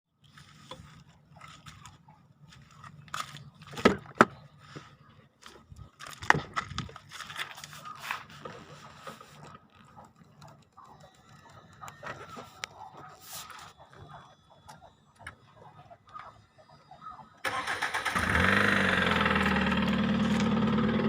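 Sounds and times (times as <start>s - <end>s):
clicks and scrapes: 0.2s - 13.8s
car engine humming: 17.4s - 21.0s
engine knocking: 17.6s - 21.0s.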